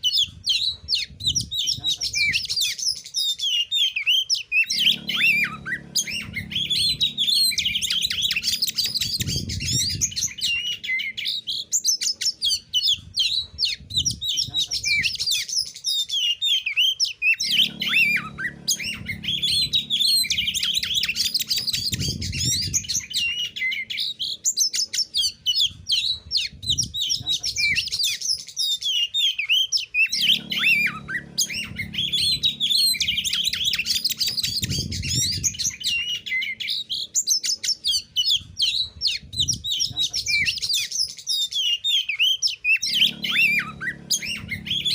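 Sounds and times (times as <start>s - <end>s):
bird singing chirps and whistles: 0.0s - 44.9s
low hum: 4.6s - 11.7s, 17.4s - 24.4s, 30.1s - 37.2s, 42.8s - 44.9s.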